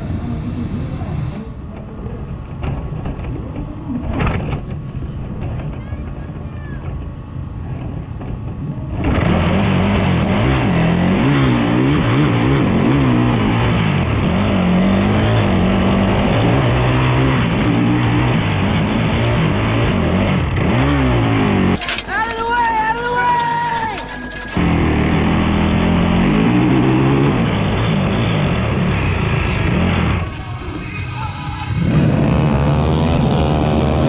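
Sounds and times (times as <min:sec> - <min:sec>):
atv engine revving: 0:08.8 - 0:22.3, 0:24.6 - 0:34.0.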